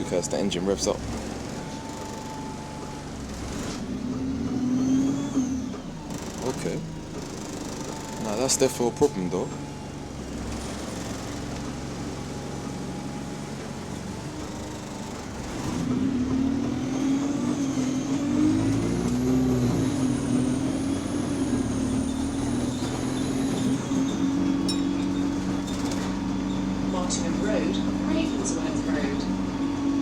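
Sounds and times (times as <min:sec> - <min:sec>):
bus engine with drivetrain whine: 0:00.0 - 0:30.0
repetitive mechanical knocking: 0:06.1 - 0:08.5.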